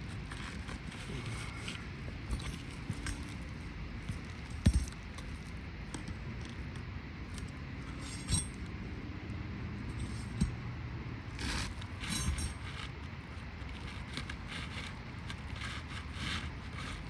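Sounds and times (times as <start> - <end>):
knocks and clinks on shingles: 0.1 - 6.6, 7.3 - 8.7, 11.4 - 17.0.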